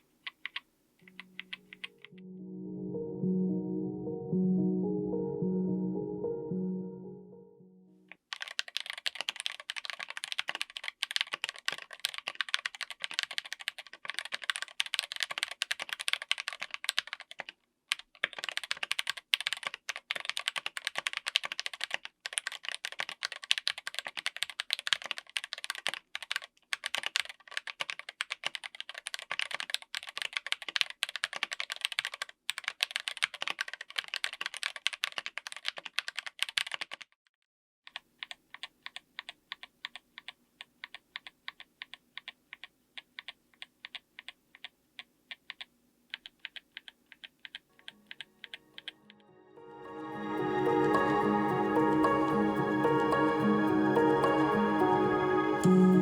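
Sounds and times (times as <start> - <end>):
fast typing on mechanical keyboard: 0.3 - 1.9, 8.1 - 37.2, 37.9 - 49.0.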